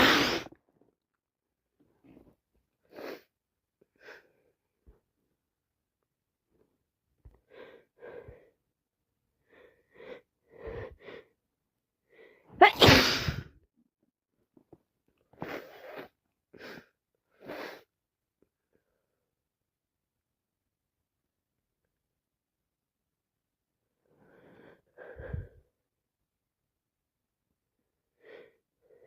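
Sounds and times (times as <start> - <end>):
loud sneeze: 0.0 - 0.5, 12.6 - 13.5.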